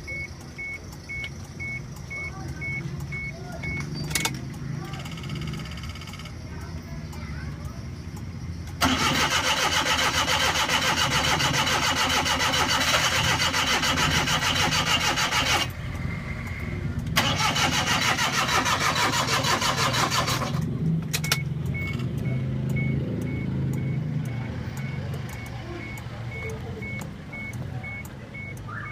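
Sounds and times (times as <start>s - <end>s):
engine running: 0.1s - 28.8s
starter cranking engine: 0.9s - 6.6s, 8.6s - 22.9s
faint short beep: 21.3s - 28.9s.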